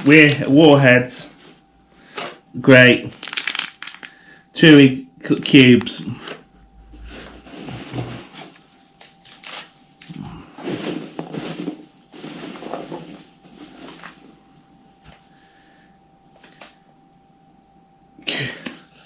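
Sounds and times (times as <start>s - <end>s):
plastic wrappers rustling: 3.1s - 4.2s, 7.6s - 14.2s.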